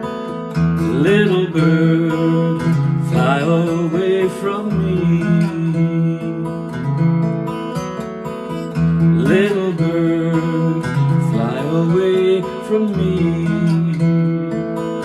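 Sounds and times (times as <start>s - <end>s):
strummed acoustic guitar: 0.0s - 15.0s.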